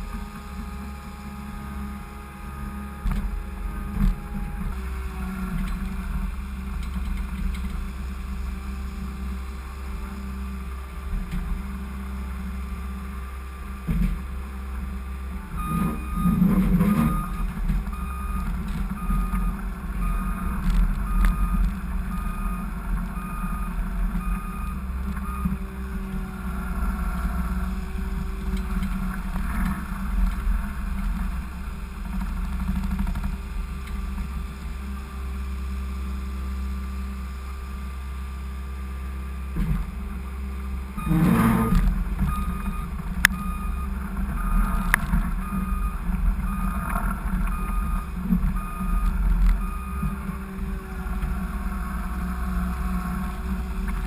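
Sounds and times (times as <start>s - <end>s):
skid steer engine running: 0.0s - 54.0s
noisy clatter: 2.9s - 8.6s, 13.6s - 35.1s, 40.8s - 54.0s
backup alarm beeping: 15.6s - 25.6s, 41.0s - 50.2s.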